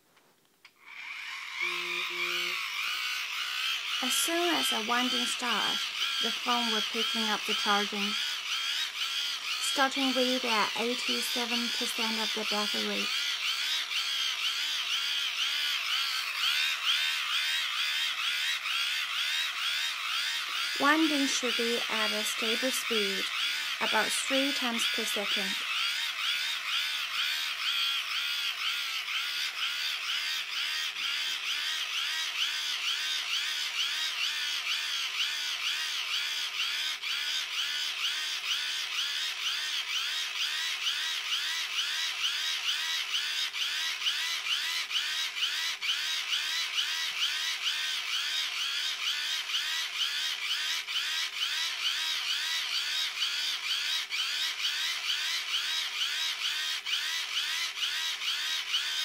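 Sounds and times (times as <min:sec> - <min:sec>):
hand crank generator whirring: 0:00.7 - 0:59.0.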